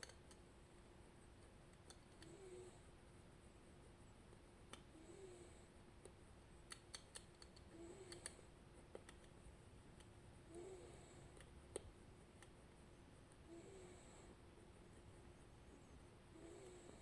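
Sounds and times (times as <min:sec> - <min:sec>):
metallic clicks of lock-picking tools: 0:00.0 - 0:00.4, 0:01.4 - 0:02.3, 0:06.0 - 0:09.4
steady low hum: 0:00.0 - 0:17.0.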